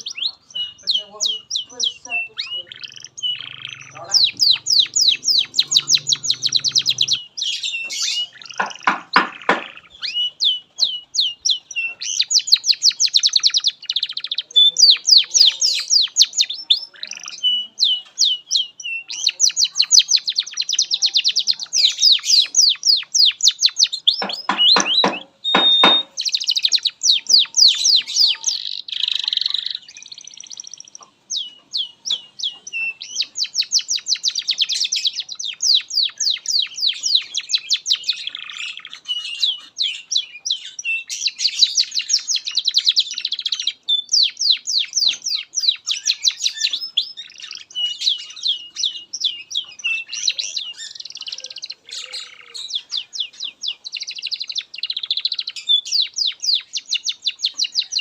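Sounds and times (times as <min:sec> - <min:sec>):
canary singing trills: 0:00.0 - 0:58.0.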